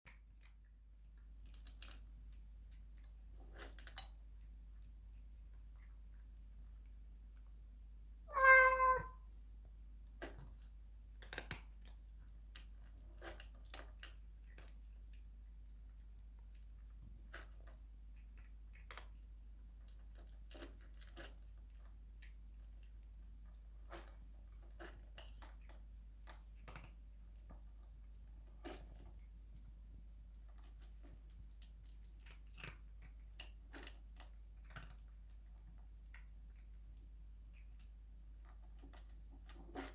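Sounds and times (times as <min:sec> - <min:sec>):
cat chewing food crunches: 0:00.1 - 0:07.5, 0:10.1 - 0:39.9
cat meowing: 0:08.3 - 0:09.2.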